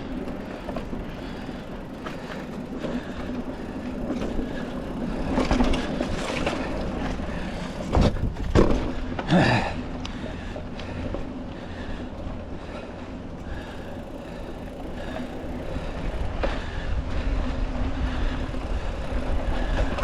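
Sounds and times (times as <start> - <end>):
bike tyres rumbling on dirt: 0.0 - 20.0
bike knocking over bumps: 0.2 - 9.6.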